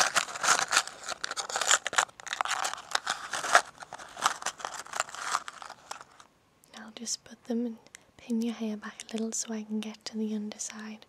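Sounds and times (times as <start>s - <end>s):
rustling: 0.0s - 6.3s.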